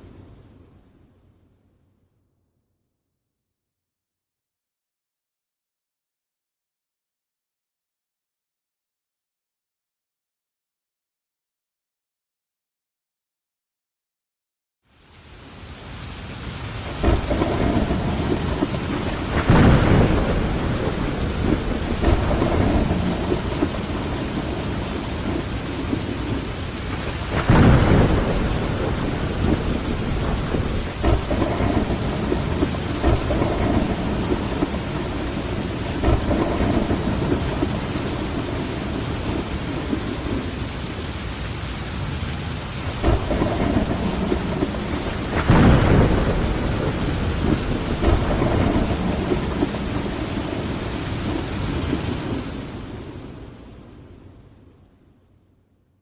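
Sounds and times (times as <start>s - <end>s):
rain on a window: 0.0s - 2.0s, 14.8s - 56.0s
thunder rumbling: 15.8s - 54.3s.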